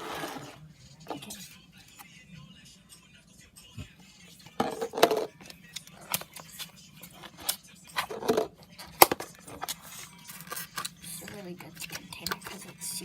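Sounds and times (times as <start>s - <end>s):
plastic scraping: 0.0s - 1.2s, 4.6s - 5.3s.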